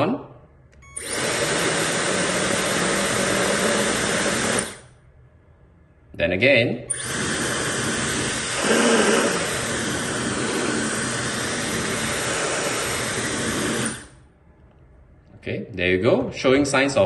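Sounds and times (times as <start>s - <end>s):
hair dryer running: 1.0s - 4.8s, 7.0s - 14.2s.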